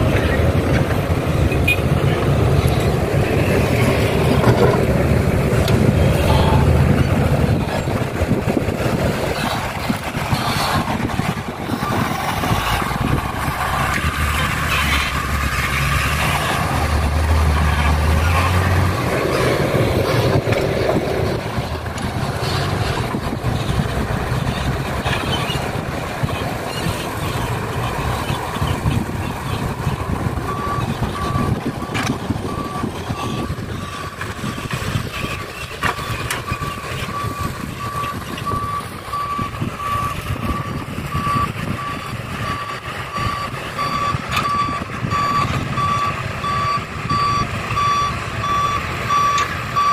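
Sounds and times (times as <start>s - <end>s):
diesel engines under load: 0.0s - 49.9s
reversing alarm beeping: 11.8s - 12.5s, 29.9s - 34.2s, 35.9s - 49.9s.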